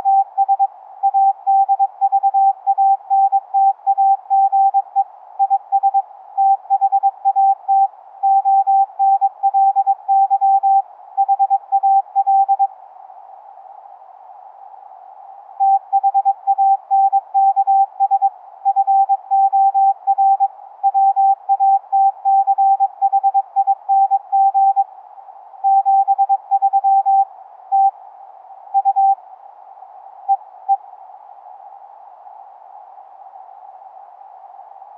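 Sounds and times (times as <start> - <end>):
receiver hiss: 0.0 - 34.9
morse code beeps: 15.6 - 24.8, 25.7 - 27.2.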